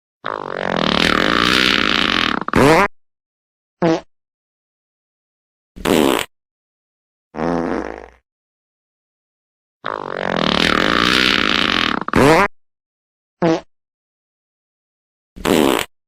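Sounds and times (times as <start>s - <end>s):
fart sounds: 0.2s - 2.9s, 3.8s - 4.1s, 5.8s - 6.3s, 7.4s - 8.2s, 9.8s - 12.5s, 13.4s - 13.7s, 15.4s - 15.9s.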